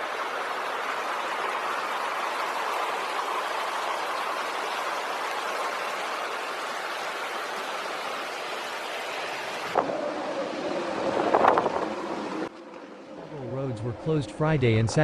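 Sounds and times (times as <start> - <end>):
floodwater rushing: 0.0 - 15.0
faint hum: 9.7 - 15.0.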